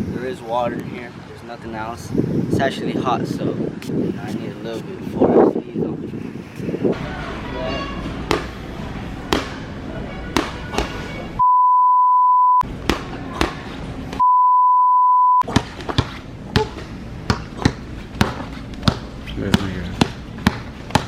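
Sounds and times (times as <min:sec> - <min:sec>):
censor bleep tone: 0:11.4 - 0:12.6, 0:14.2 - 0:15.4.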